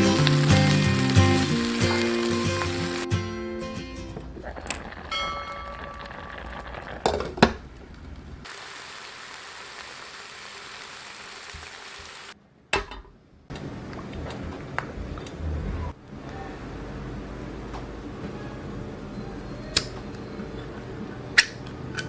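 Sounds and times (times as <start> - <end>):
food sizzling in a pan: 0.0 - 3.2, 4.5 - 7.4, 8.4 - 12.4.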